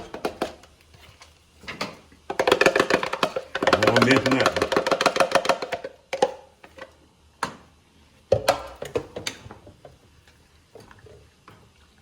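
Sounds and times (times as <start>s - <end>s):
utensil knocking on cooking pot: 2.3s - 6.4s.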